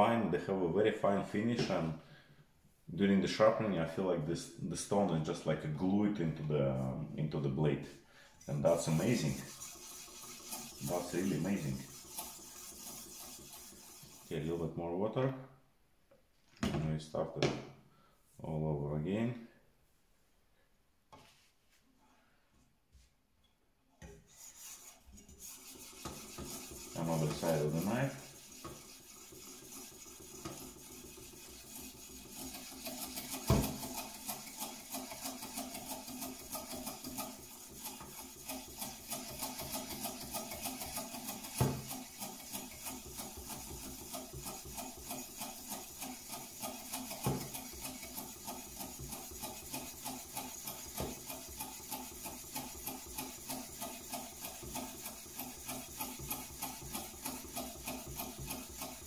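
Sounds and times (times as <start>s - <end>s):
knife rasping on whetstone: 8.5s - 14.3s, 24.3s - 59.0s.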